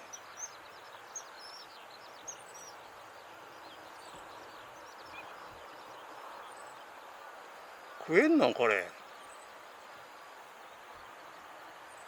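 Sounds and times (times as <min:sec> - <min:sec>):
faint high bird chirps: 0:00.0 - 0:02.9, 0:03.5 - 0:06.9
river rushing: 0:00.0 - 0:12.0.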